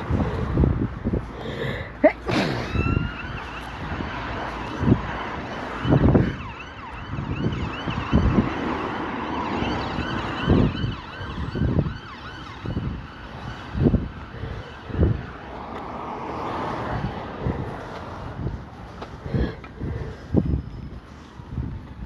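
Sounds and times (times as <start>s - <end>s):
traffic noise: 0.0s - 22.0s
siren yelping: 2.3s - 15.5s.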